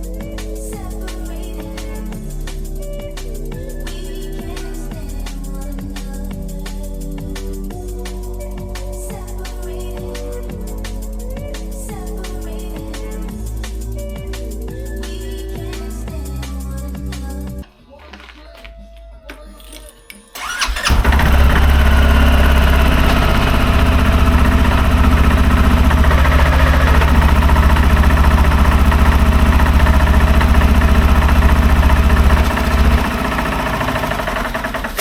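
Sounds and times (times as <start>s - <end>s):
engine running: 20.4s - 35.0s.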